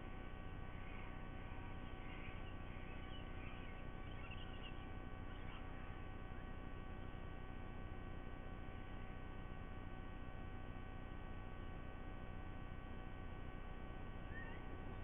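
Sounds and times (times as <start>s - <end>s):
electrical hum with low rumble: 0.0s - 15.0s
faint high bird chirps: 0.6s - 6.7s, 14.1s - 15.0s.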